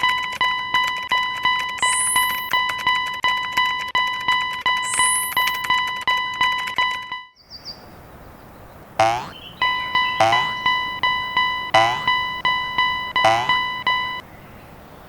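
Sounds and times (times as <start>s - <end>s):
short chirp: 1.8s - 2.6s, 4.8s - 5.7s, 9.0s - 14.2s.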